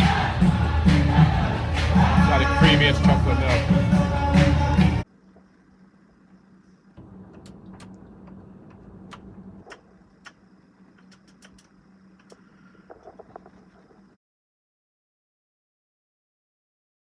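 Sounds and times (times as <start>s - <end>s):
steady low hum: 0.0s - 14.2s
light clicks and ticks: 11.0s - 13.6s.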